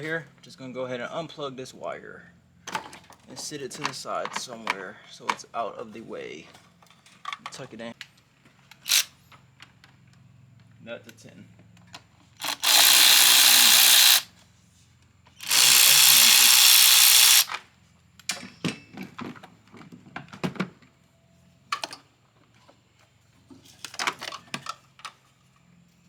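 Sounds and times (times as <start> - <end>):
power tool bursts: 8.8 - 9.1, 12.4 - 14.3, 15.4 - 17.6.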